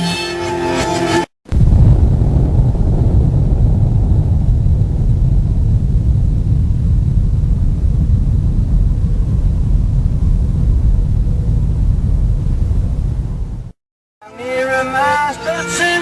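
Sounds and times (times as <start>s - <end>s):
loud low rumble: 1.5s - 13.8s.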